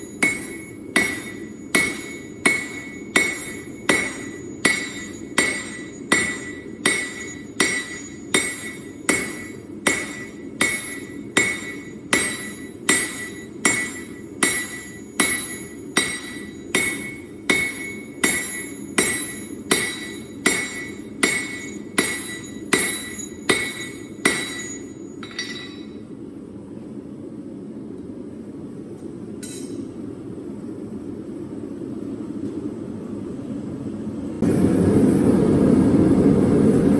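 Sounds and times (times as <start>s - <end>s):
hammer striking steel on anvil: 0.0s - 26.1s, 29.4s - 30.0s.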